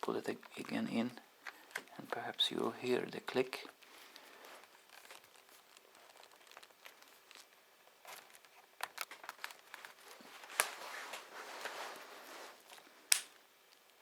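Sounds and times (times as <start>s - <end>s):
plastic rubbing: 3.3s - 12.8s.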